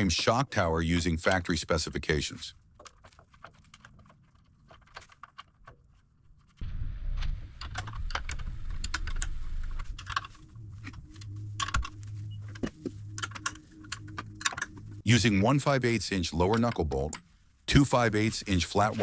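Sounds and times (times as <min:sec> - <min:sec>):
steady low hum: 0:06.6 - 0:19.0
tools and hardware clinking: 0:11.6 - 0:14.9, 0:16.4 - 0:17.3.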